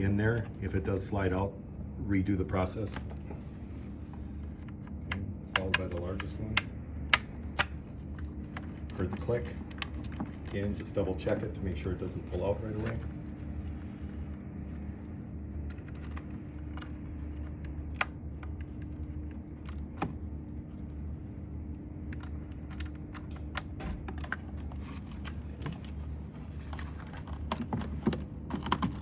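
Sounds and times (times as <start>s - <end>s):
steady low hum: 0.0s - 29.0s
wiring plugs clicking and rattling: 4.4s - 13.5s, 15.4s - 26.0s, 26.6s - 29.0s.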